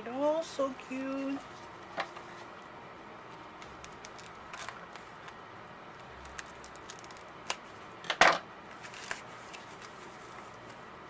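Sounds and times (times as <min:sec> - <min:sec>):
central heater running: 0:00.0 - 0:11.0
packaging rustling: 0:03.4 - 0:07.7, 0:08.7 - 0:10.8
packaging clicks: 0:06.0 - 0:08.2.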